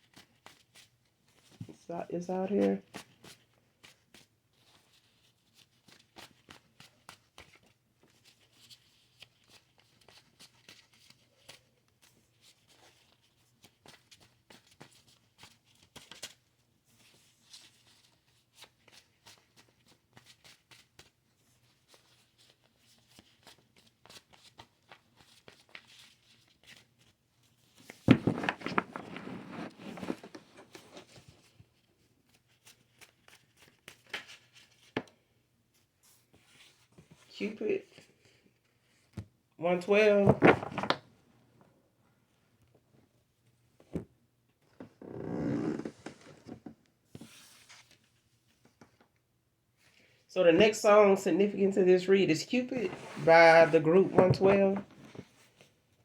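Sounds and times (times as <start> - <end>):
cards clicking and rustling: 27.8 - 31.2, 32.7 - 35.0, 40.2 - 41.0
card shuffling: 27.8 - 31.5, 39.8 - 41.1, 52.6 - 55.7.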